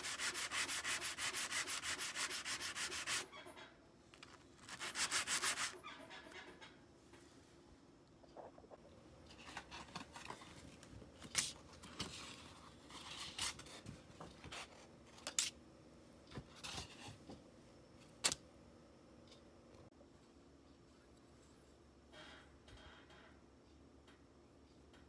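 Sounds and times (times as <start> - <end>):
knife scraping: 0.0 - 3.5, 4.6 - 6.2.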